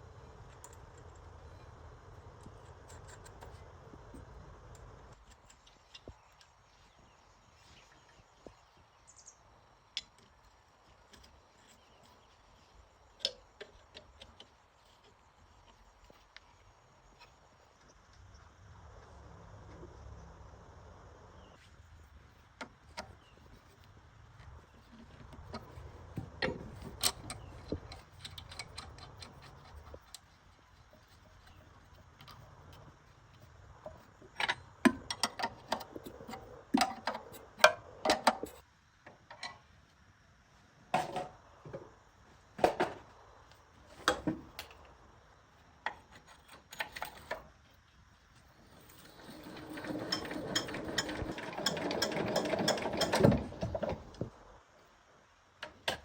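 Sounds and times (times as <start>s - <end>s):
hand tools clicking on metal: 26.4s - 30.3s
metal rattling and scraping: 48.7s - 54.3s.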